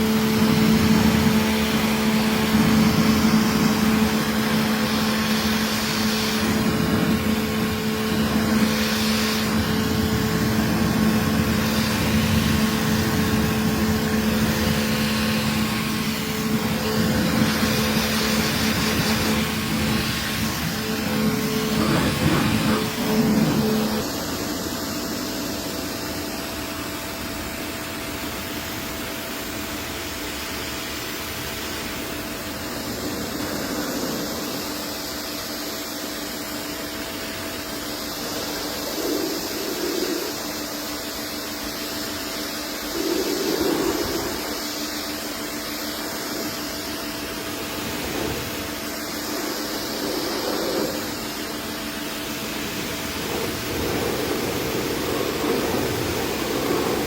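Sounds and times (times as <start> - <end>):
machine motor humming: 0.0 - 26.7
hiss of air or spray: 29.4 - 57.0.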